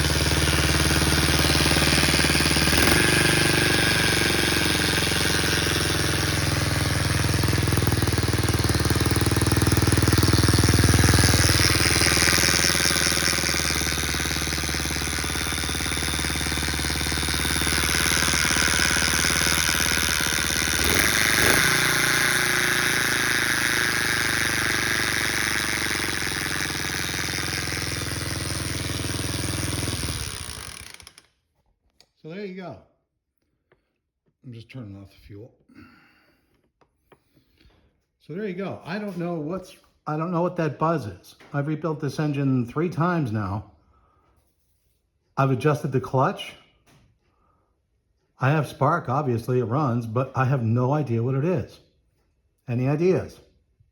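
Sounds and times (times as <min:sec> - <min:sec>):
mini dirt bike engine running: 0:00.0 - 0:31.3
buzz from engine: 0:09.6 - 0:30.9.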